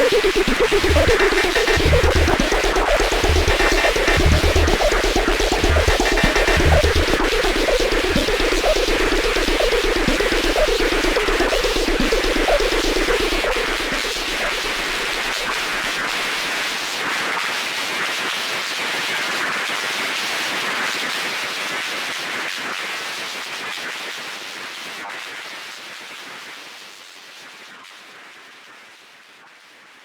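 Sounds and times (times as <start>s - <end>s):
harsh crackling synthesizer noise: 0.0s - 16.6s.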